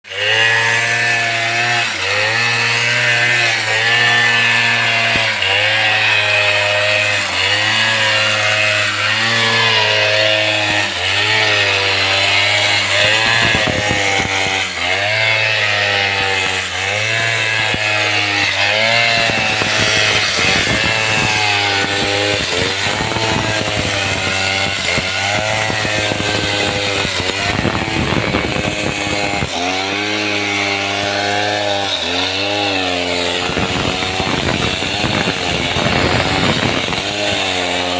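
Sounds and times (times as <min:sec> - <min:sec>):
chainsaw cutting wood: 0:00.0 - 0:37.9
dense rattling crackle: 0:18.4 - 0:30.0.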